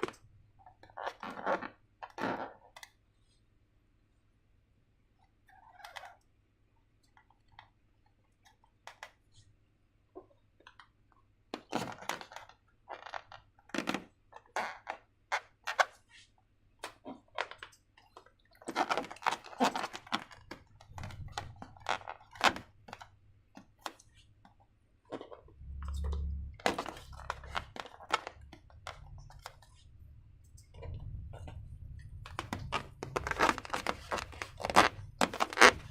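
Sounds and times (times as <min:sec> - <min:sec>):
crinkly crunchy handling noise: 0:30.6 - 0:35.9
dull low thump: 0:30.7 - 0:33.6.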